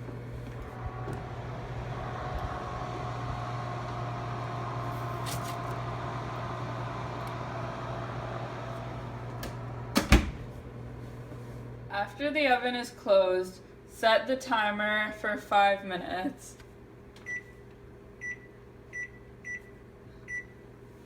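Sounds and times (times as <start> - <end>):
electric oven hum: 0.0 - 14.0.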